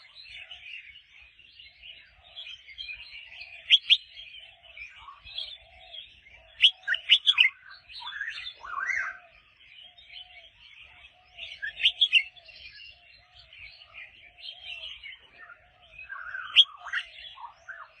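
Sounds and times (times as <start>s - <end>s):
chattering birdsong: 0.0s - 18.0s
loud whistled bird phrases: 3.0s - 10.6s, 11.3s - 18.0s.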